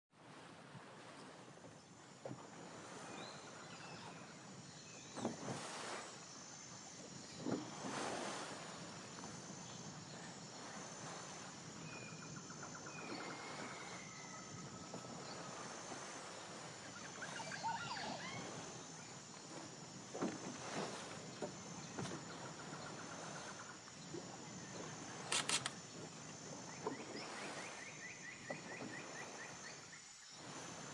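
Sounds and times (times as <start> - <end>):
sharp clicks: 25.3 - 25.8.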